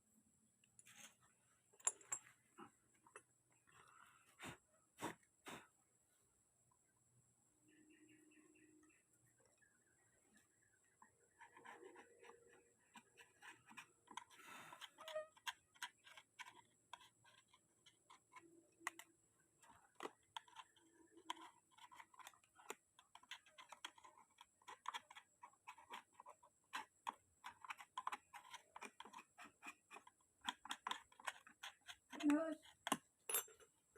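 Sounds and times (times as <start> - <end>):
hand tools clicking and tapping: 11.9 - 33.8.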